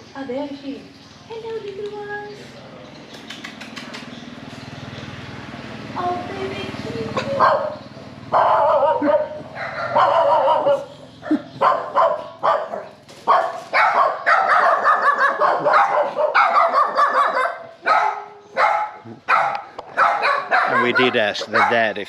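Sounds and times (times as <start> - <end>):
dog barking: 7.3 - 22.0.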